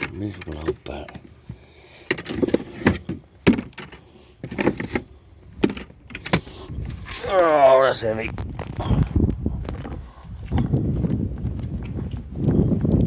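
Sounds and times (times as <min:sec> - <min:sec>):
shopping knocks and clunks: 0:00.0 - 0:07.6.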